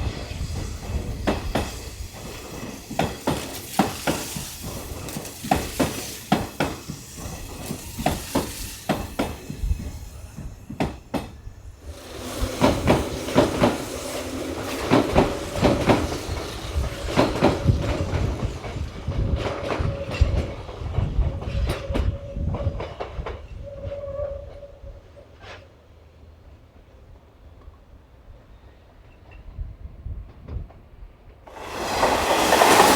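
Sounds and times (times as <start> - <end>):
train wheels clacking over rail joints: 0.0 - 24.0, 31.5 - 32.9
steady train tone: 0.0 - 26.7, 31.5 - 32.9.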